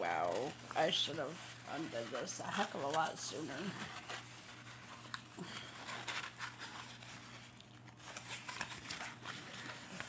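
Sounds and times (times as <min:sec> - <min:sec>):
canvas and plastic film crinkling: 0:00.0 - 0:10.0
faint steady hum: 0:00.0 - 0:10.0.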